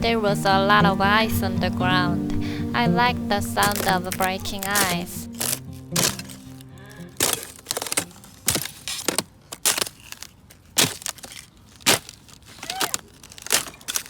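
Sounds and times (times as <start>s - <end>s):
ice cracking and shattering: 3.6s - 14.0s.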